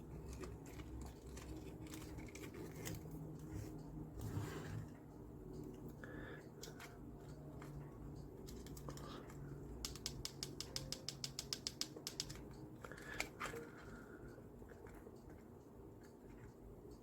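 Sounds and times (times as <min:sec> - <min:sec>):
light clicks of small parts: 0:05.6 - 0:17.0.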